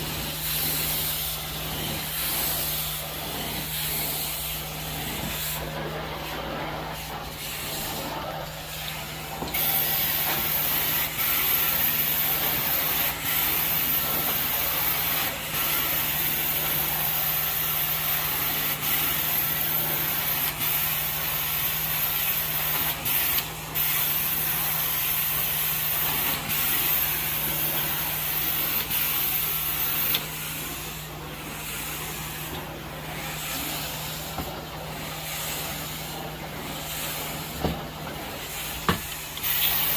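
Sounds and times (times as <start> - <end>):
cleaning wand spray hiss: 8.5 - 37.7, 38.4 - 39.9.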